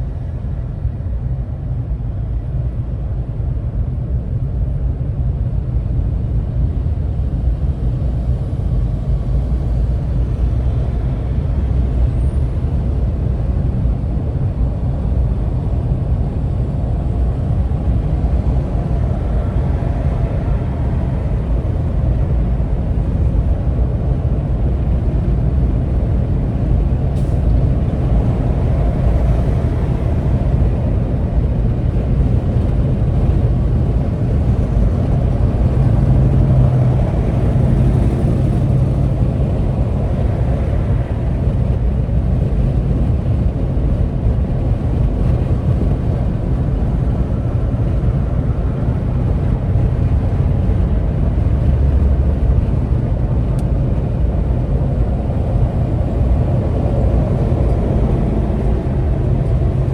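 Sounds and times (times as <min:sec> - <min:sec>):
road noise: 0:00.0 - 0:59.9
vehicle engine rumble: 0:00.0 - 0:59.9.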